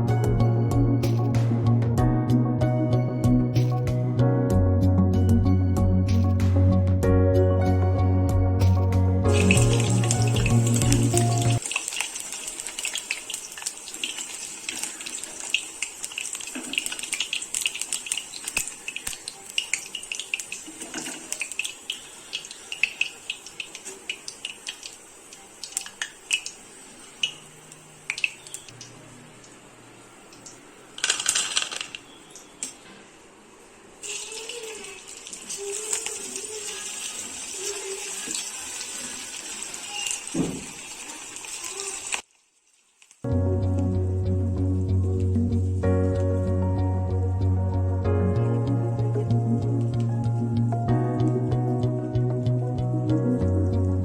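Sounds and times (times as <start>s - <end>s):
oil popping and crackling: 9.3s - 27.5s, 28.1s - 29.6s, 30.3s - 32.7s, 34.0s - 43.9s
food deep-frying in oil: 9.3s - 32.8s, 34.0s - 43.3s.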